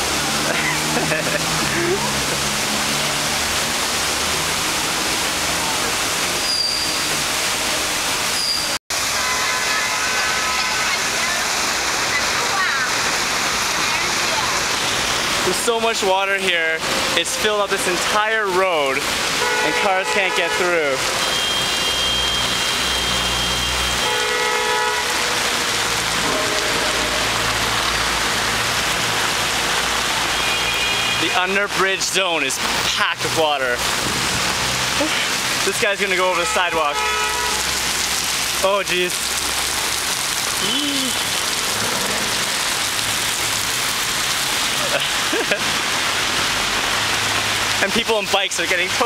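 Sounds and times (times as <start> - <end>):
floodwater rushing: 0.0 - 49.0
rain and flowing water hiss: 0.0 - 49.0
car horn: 8.9 - 11.1, 19.3 - 25.6, 30.3 - 31.4, 36.2 - 37.8.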